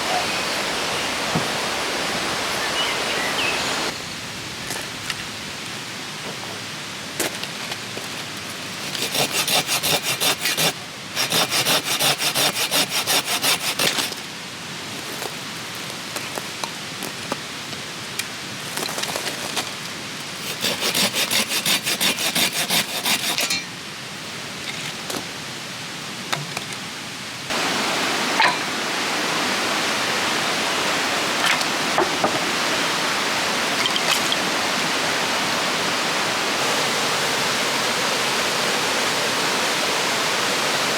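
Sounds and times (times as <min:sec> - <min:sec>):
rushing river water: 0:00.0 - 0:04.0, 0:27.5 - 0:40.9
rasping sawing strokes: 0:08.8 - 0:14.2, 0:20.4 - 0:23.6.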